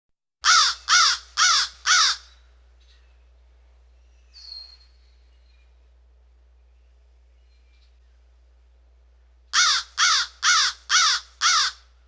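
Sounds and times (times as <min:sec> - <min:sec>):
crow cawing: 0:00.4 - 0:02.4, 0:09.5 - 0:11.9
distant bird whistling: 0:04.0 - 0:05.7.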